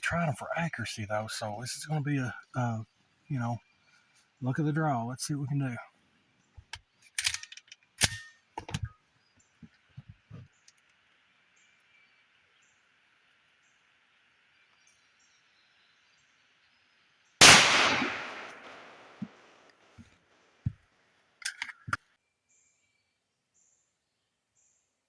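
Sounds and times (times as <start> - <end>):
sharp clicks and knocks: 6.6 - 9.0
pistol shot with echo: 17.4 - 19.4.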